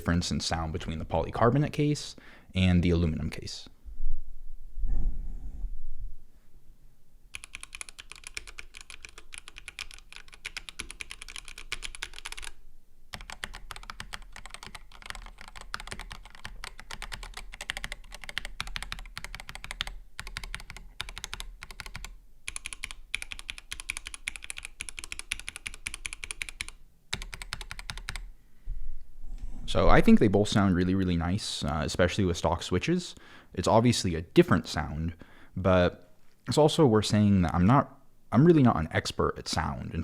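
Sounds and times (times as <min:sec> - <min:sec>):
mechanical keyboard keys clicking: 0:07.4 - 0:28.2.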